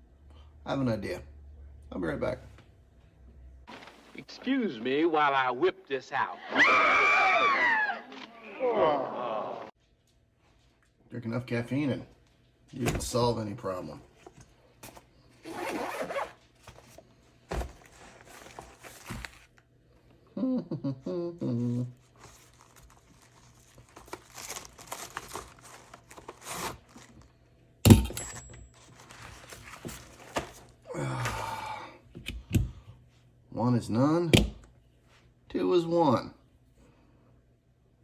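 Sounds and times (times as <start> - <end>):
bag rustling and scraping: 3.7 - 4.2, 14.2 - 19.5, 28.7 - 30.8
zipper being pulled: 15.4 - 16.4.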